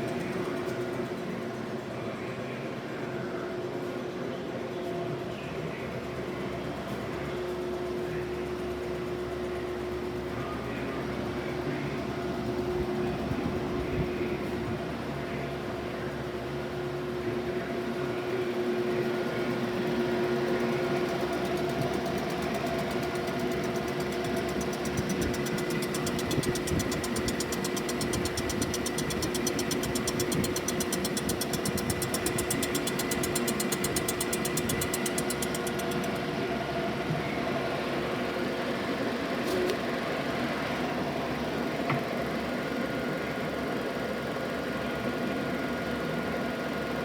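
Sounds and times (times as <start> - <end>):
machine tool humming: 20.6 - 36.8
fast even ticking: 21.2 - 36.2.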